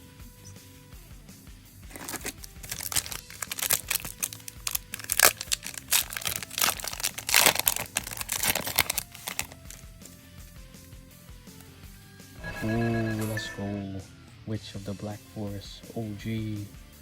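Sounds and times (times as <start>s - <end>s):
foil wrapper tearing and crinkling: 1.9s - 9.9s.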